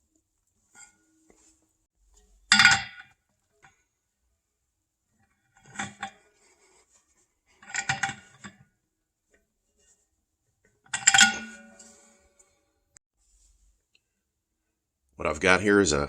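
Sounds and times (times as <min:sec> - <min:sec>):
metal pipe fittings clanking: 0:00.6 - 0:03.7, 0:05.6 - 0:06.6, 0:07.5 - 0:08.6, 0:10.8 - 0:12.6.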